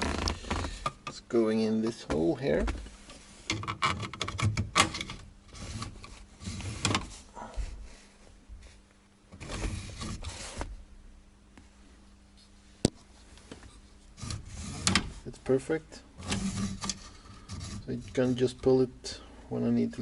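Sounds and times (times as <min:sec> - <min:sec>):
plastic scraping and rubbing: 0:00.0 - 0:01.0, 0:02.5 - 0:07.8, 0:08.6 - 0:10.8, 0:14.1 - 0:15.3, 0:16.2 - 0:18.8.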